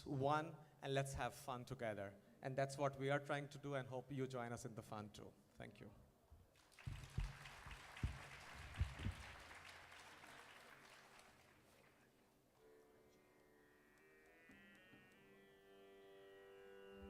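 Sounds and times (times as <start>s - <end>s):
audience applause: 6.6s - 12.2s
string instrument sustained notes: 12.6s - 17.0s.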